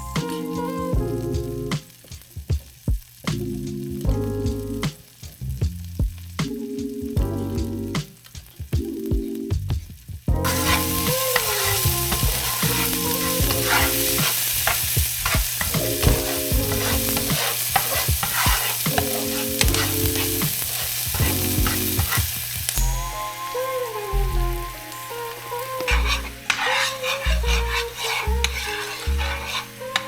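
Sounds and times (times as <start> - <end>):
food sizzling in a pan: 0.0 - 7.0, 10.4 - 30.0
utensil scraping against pan: 10.5 - 22.4, 25.8 - 30.0.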